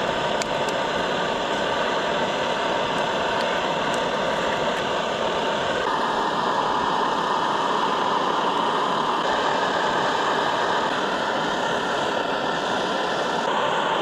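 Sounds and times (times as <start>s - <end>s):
camp stove burner hissing: 0.0s - 14.0s.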